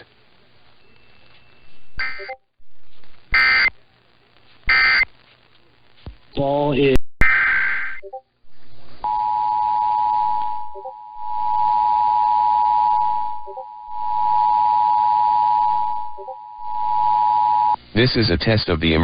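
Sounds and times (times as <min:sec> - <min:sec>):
radio static hiss: 0:00.0 - 0:09.1, 0:15.4 - 0:19.0
two-tone alert signal: 0:10.8 - 0:17.6.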